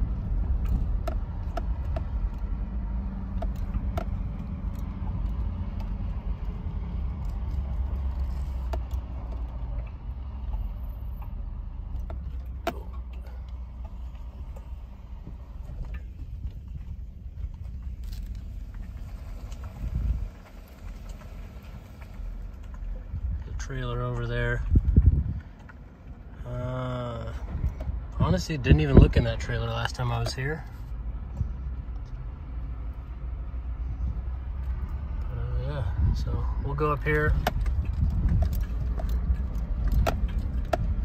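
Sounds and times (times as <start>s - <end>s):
truck engine and road rumble: 0.0s - 41.0s
clicks and rattles: 37.2s - 41.0s.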